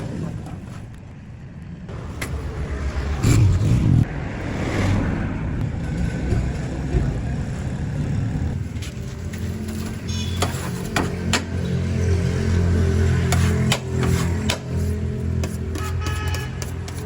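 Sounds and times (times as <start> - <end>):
vehicle engine rumble passing: 1.9 - 15.4.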